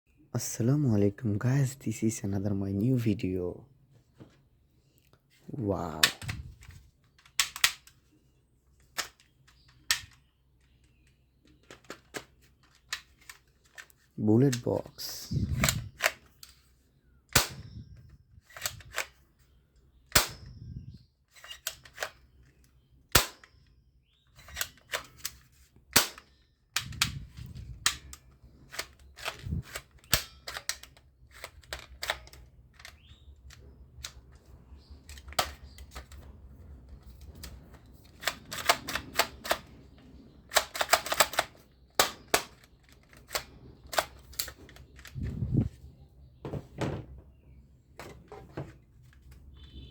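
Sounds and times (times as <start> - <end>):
plastic toy gun clicks and snaps: 5.9 - 8.0, 8.8 - 10.3, 15.4 - 16.6, 17.3 - 19.2, 20.1 - 20.6, 21.3 - 36.3, 36.9 - 45.3.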